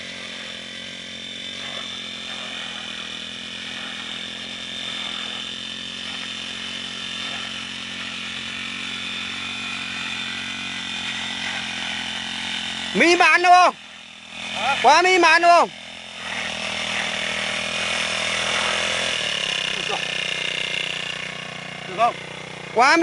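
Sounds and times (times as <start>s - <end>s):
brush cutter engine running: 0.0s - 23.0s.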